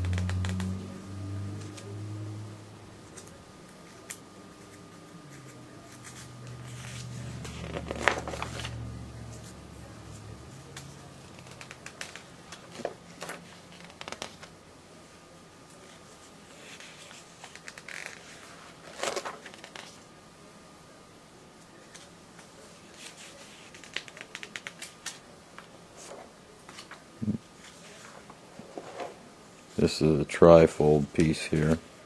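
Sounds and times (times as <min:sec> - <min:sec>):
paper pages rustling: 0:03.1 - 0:09.5, 0:10.1 - 0:14.5, 0:15.8 - 0:20.0, 0:21.9 - 0:25.2, 0:26.0 - 0:27.0.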